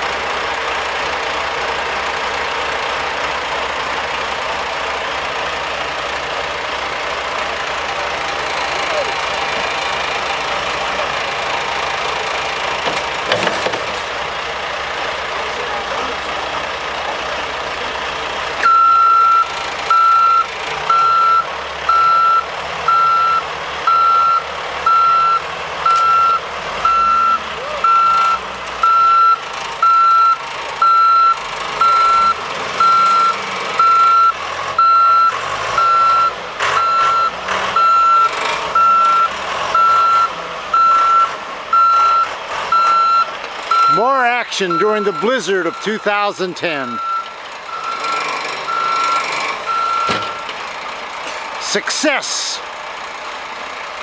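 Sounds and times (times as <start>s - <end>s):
diesel engine running: 0.0s - 54.0s
backup alarm beeping: 18.6s - 50.5s.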